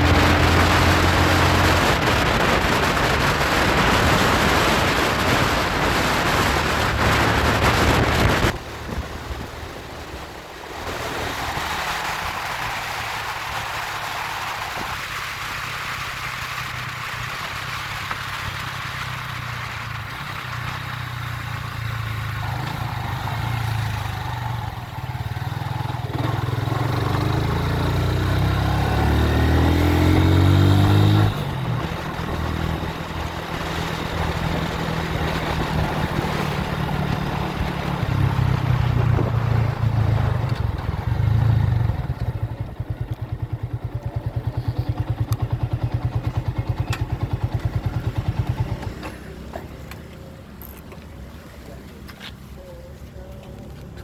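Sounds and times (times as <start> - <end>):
engine revving: 0.0 - 9.4, 21.4 - 49.4
engine hum: 0.0 - 54.0
wind and road noise: 0.0 - 54.0.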